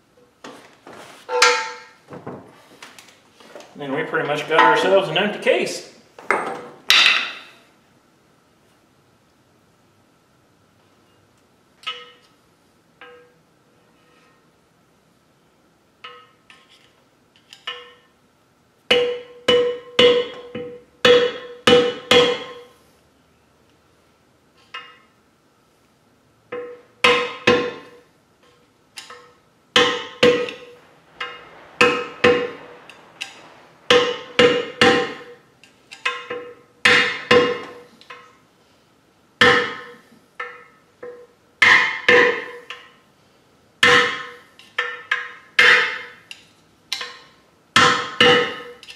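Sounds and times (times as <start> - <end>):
hammer striking metal drift: 18.9 - 22.7, 26.6 - 28.0, 29.0 - 37.9.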